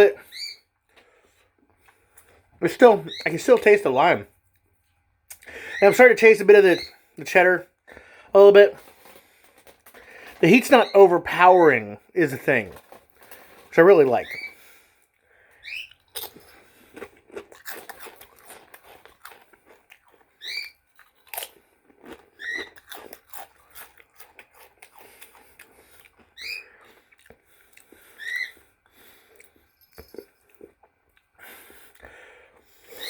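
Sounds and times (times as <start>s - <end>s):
bird chirps: 0.2s - 0.6s, 6.7s - 7.0s, 15.6s - 16.0s, 20.4s - 20.8s
crunching and chewing chips: 0.9s - 2.5s, 7.9s - 11.0s, 12.2s - 33.0s.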